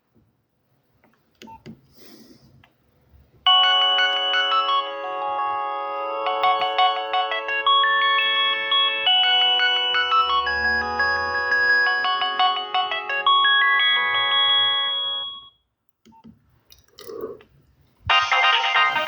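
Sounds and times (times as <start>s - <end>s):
phone ringtone melody: 3.5s - 15.5s.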